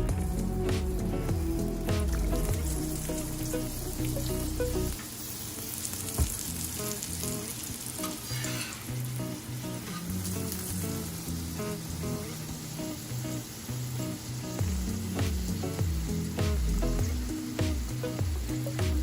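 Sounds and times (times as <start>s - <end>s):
background music: 0.0s - 5.0s, 14.3s - 19.0s
oil sizzling on a griddle: 0.0s - 19.0s.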